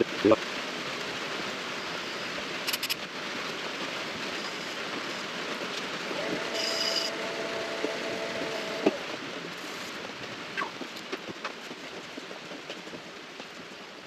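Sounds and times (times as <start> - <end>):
sandpaper hissing on spinning lathe: 6.1 - 8.9
thin whine: 6.1 - 9.0.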